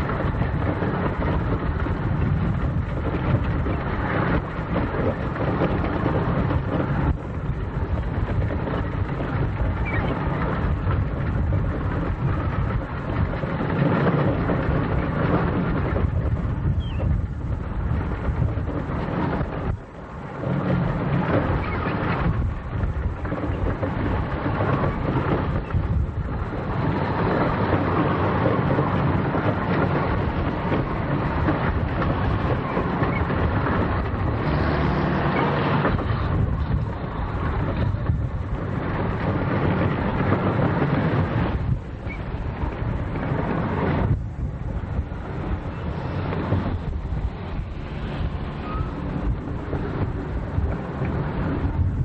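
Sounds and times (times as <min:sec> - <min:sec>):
gusty wind buffeting microphone: 0:00.0 - 0:52.0.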